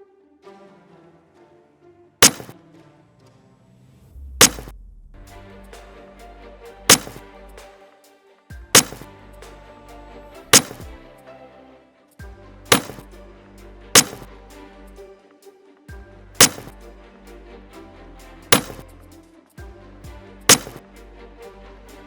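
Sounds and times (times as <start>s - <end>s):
soft background music: 5.2s - 22.0s.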